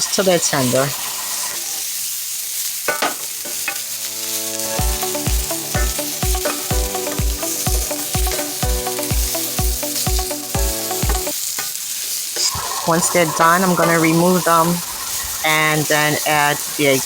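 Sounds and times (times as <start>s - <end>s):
vegetables sizzling in a skillet: 0.0s - 17.0s
background music with steady beat: 4.0s - 11.4s.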